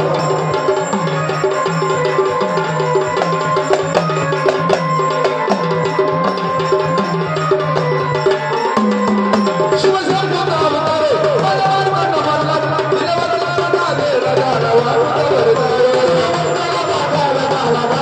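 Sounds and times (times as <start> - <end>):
keyboard melody: 0.0 - 13.5
drum and percussion strikes: 0.0 - 18.0.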